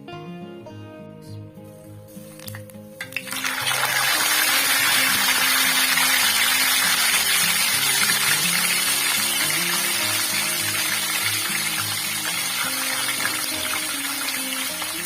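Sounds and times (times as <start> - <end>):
acoustic guitar music: 0.0 - 15.0
loud steady kitchen hiss: 3.0 - 15.0.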